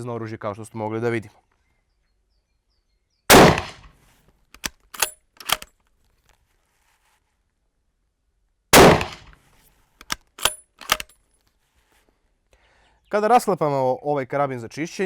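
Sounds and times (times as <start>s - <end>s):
rifle bolt clicks: 3.3s - 3.9s, 4.5s - 5.8s, 8.8s - 9.4s, 10.0s - 11.2s
rifle shots: 3.3s - 3.9s, 4.9s - 5.7s, 8.8s - 9.4s, 10.4s - 11.1s.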